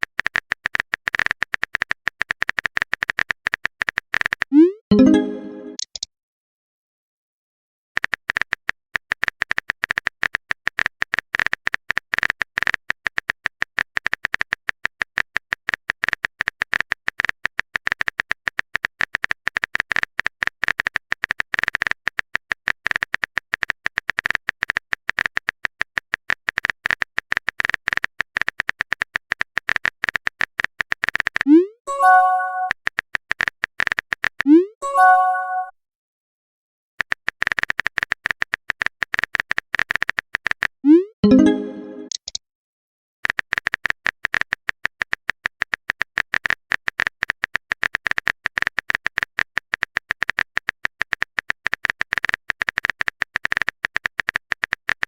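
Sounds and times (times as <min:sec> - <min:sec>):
phone keyboard typing clicks: 0:00.0 - 0:06.1, 0:08.0 - 0:31.5, 0:37.0 - 0:42.4
chiming notification tone: 0:04.9 - 0:05.8, 0:31.9 - 0:32.7, 0:34.8 - 0:35.7, 0:41.2 - 0:42.2.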